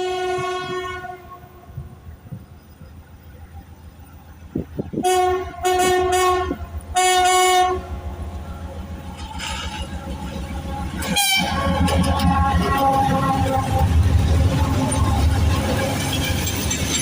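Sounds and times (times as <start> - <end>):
locomotive horn blasts: 0.0 - 1.9, 4.9 - 8.1, 11.0 - 15.0.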